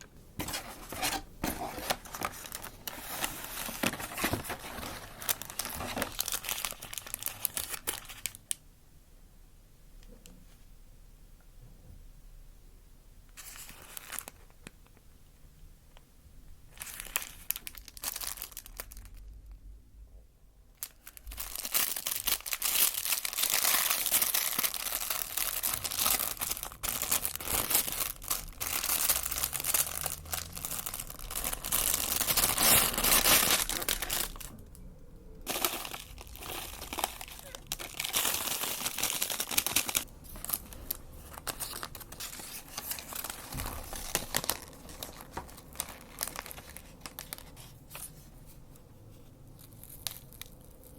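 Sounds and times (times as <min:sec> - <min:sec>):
food wrapper crinkling: 0:00.0 - 0:08.6, 0:16.7 - 0:19.5, 0:20.8 - 0:48.1, 0:49.5 - 0:50.9.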